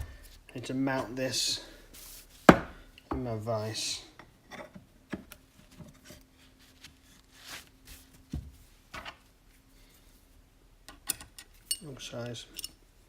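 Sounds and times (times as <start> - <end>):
metal tools scraping and knocking: 10.9 - 12.8.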